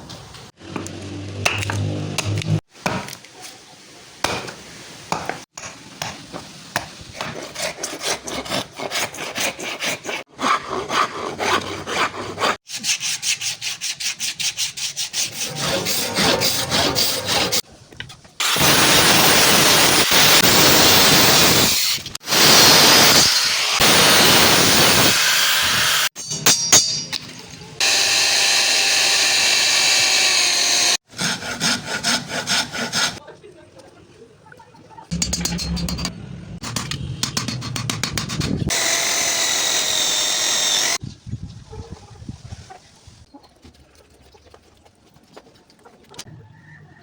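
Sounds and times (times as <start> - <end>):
hand tool rasping wood: 7.2 - 17.6, 27.8 - 33.2.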